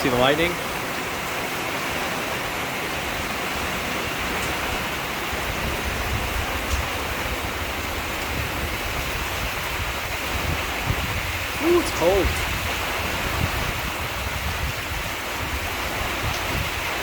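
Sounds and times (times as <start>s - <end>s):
heavy rain on a tin roof: 0.0s - 17.0s.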